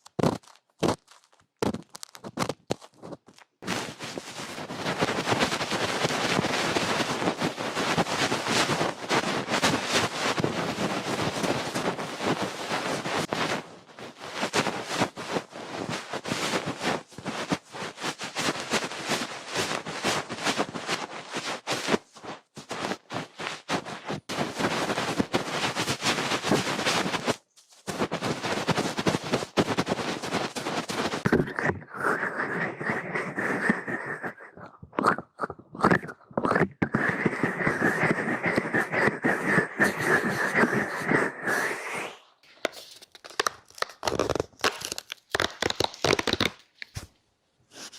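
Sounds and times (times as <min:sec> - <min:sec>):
fast crackling and clicking: 0:42.6 - 0:47.0.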